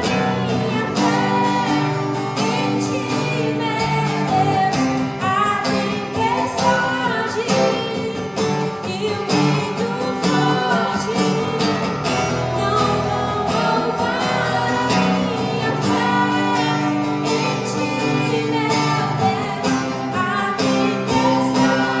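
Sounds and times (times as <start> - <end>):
guitar accompaniment: 0.0 - 22.0
person singing: 0.0 - 22.0.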